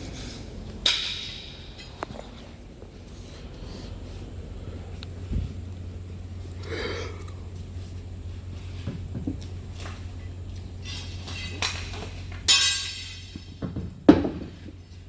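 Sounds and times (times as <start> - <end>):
steady low hum: 0.0 - 15.0
loud ringing metal clang: 0.8 - 2.0, 12.5 - 13.6.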